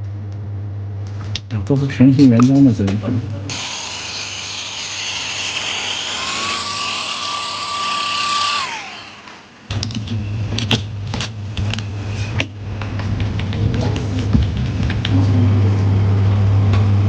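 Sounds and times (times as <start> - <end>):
electric tool whining: 3.5 - 10.0
low hum: 8.8 - 17.0.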